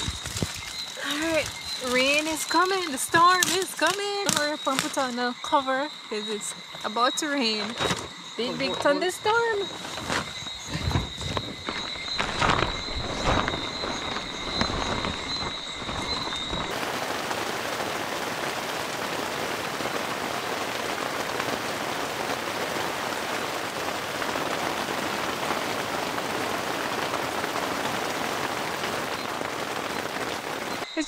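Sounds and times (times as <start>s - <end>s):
rain falling: 0.0s - 31.0s
low rumbling: 9.6s - 16.8s.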